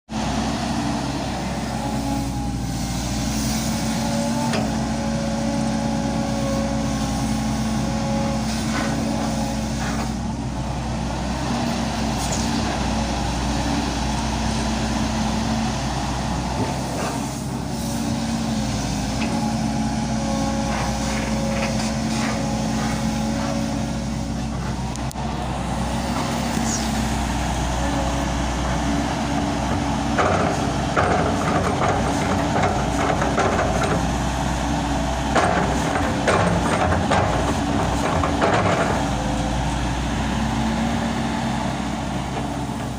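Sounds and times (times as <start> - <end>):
excavator diesel engine running: 0.1 - 42.9
hydraulic whine: 11.4 - 41.2.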